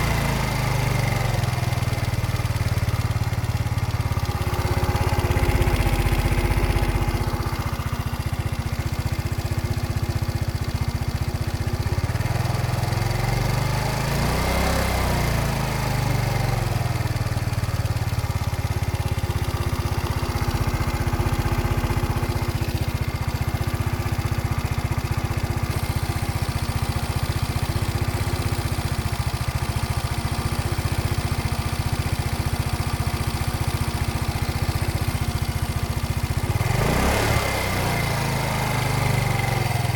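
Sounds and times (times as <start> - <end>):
scooter engine running: 0.0 - 39.9.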